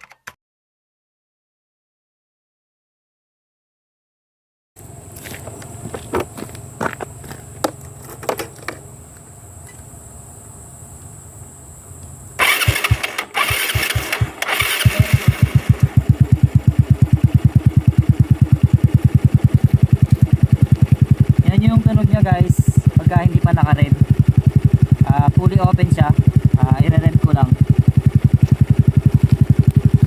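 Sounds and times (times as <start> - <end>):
motorcycle engine idling: 12.1 - 30.0
motorcycle starter cranking: 12.4 - 30.0.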